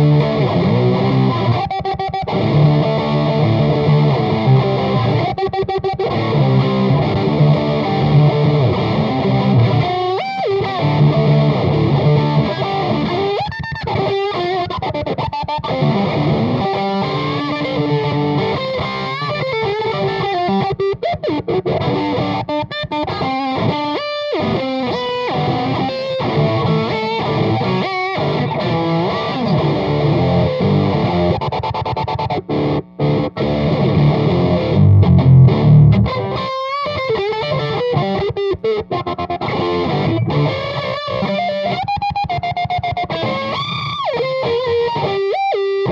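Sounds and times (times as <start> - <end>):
distorted electric guitar riffs: 0.0 - 45.9.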